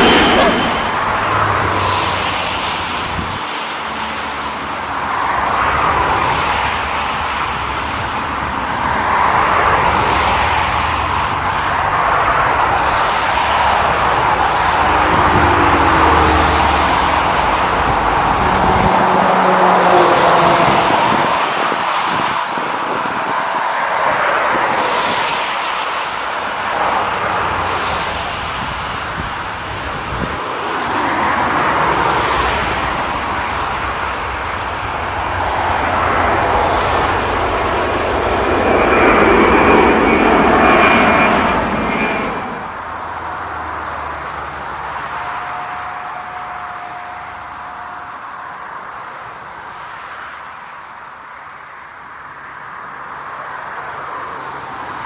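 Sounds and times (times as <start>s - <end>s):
faint whining tone: 0.0s - 1.1s, 43.9s - 49.7s
jet engines rushing: 0.0s - 51.3s.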